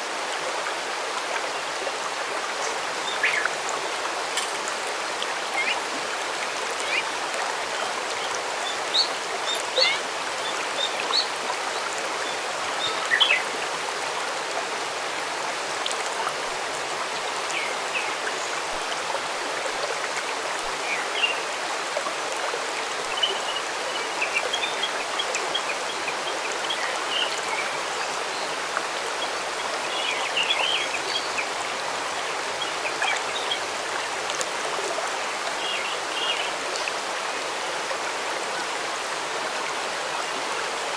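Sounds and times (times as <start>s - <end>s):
stream running: 0.0s - 40.9s.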